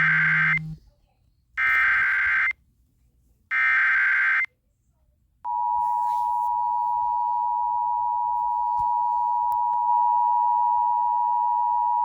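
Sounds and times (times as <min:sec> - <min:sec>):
two-tone alarm: 0:00.0 - 0:00.8.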